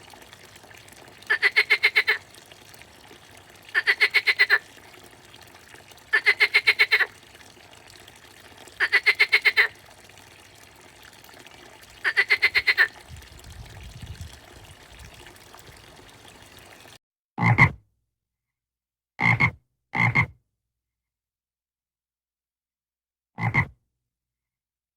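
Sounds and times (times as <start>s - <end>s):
frogs croaking: 1.3s - 2.3s, 3.7s - 4.6s, 6.1s - 7.1s, 8.8s - 9.8s, 12.0s - 13.0s.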